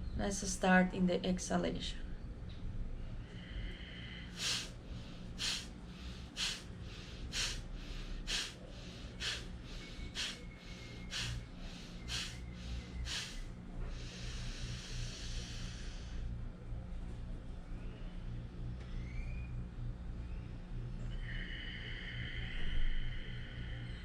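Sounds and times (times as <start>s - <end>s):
forceful nasal exhalations: 4.1s - 16.2s.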